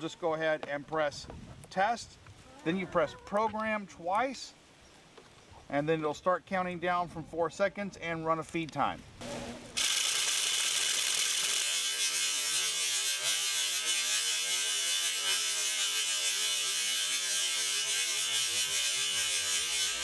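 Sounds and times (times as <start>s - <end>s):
feeder spinner motor whirring: 9.2s - 20.0s.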